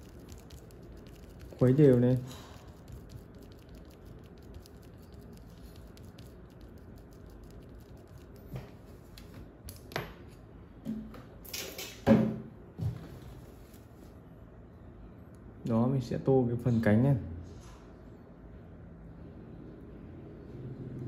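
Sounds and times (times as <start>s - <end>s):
paintbrush clicking in palette: 0.0s - 8.5s.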